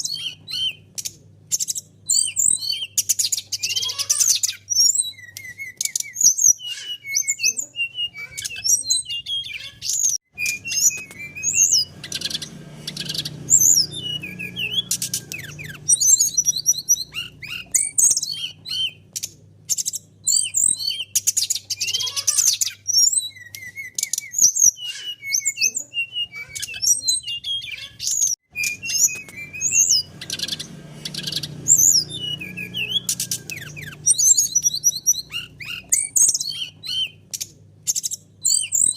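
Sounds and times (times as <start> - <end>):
bird singing chirps and trills: 0.0 - 38.9.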